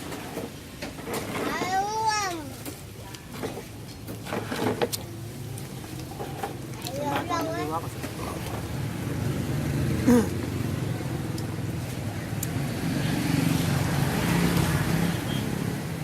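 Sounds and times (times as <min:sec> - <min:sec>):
road traffic passing: 0:00.0 - 0:16.0
brief vocal sound: 0:10.0 - 0:10.4.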